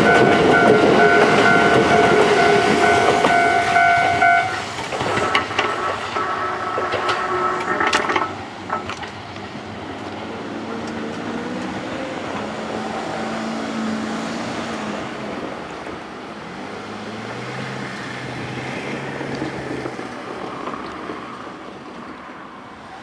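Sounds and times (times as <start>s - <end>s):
vehicle engines with road noise: 8.4s - 23.0s.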